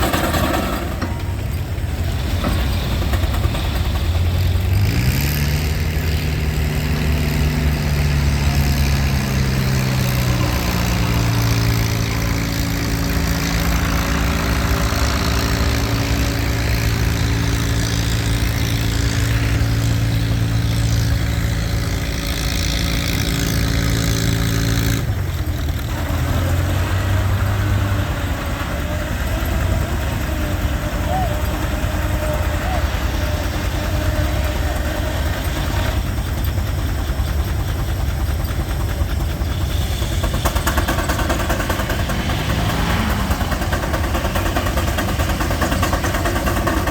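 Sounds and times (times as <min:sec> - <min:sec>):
steam engine droning tone: 0:00.9 - 0:46.9
low rumble: 0:40.8 - 0:45.6.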